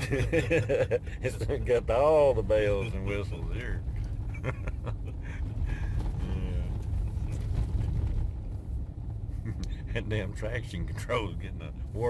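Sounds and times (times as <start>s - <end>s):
road and engine rumble: 0.0s - 12.0s.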